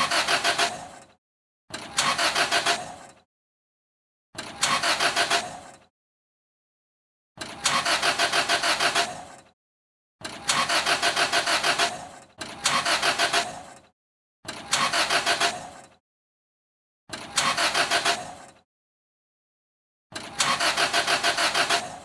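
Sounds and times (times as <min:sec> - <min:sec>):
car starter cranking engine: 0:00.0 - 0:01.1, 0:01.7 - 0:03.2, 0:04.4 - 0:05.9, 0:07.4 - 0:09.5, 0:10.2 - 0:13.9, 0:14.5 - 0:16.0, 0:17.1 - 0:18.6, 0:20.1 - 0:22.0.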